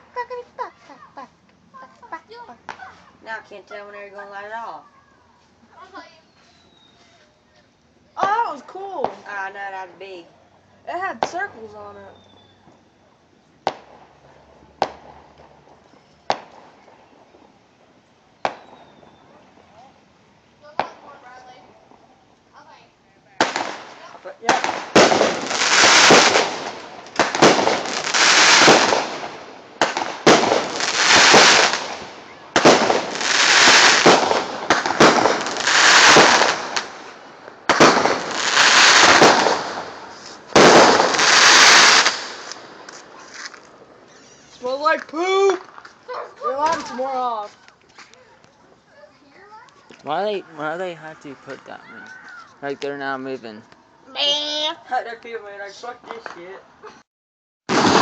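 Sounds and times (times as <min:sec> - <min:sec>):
firework bangs: 0:13.6 - 0:19.8, 0:20.7 - 0:22.1, 0:23.4 - 0:45.0, 0:57.7 - 0:58.0.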